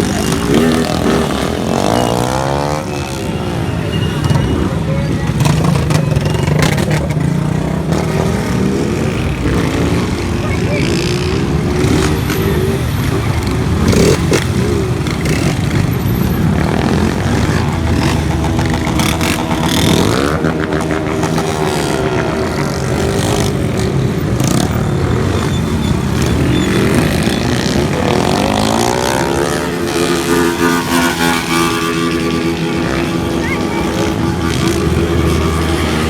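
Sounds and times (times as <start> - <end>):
motorcycle engines revving: 0.0 - 36.0.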